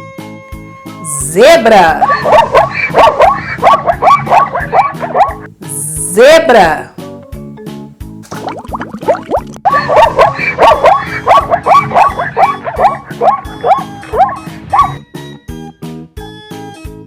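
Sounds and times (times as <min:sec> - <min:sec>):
background music: 0:00.0 - 0:17.0
zebra barking yelps: 0:02.0 - 0:05.5, 0:09.6 - 0:15.0.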